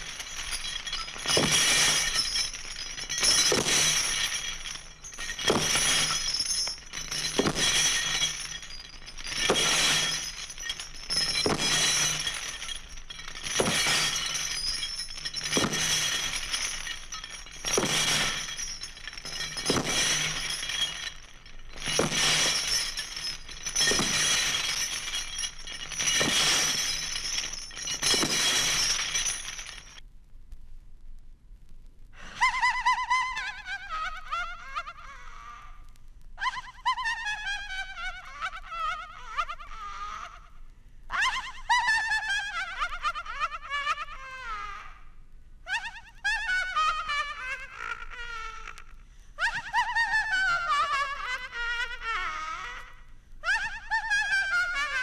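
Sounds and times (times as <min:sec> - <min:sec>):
glass breaking and shattering: 0:00.0 - 0:30.0
high-pitched glass tinkles: 0:00.0 - 0:30.0.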